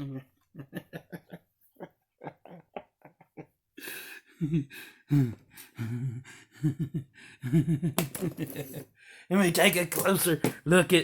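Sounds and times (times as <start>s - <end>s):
breath: 3.8s - 6.6s, 9.0s - 9.3s.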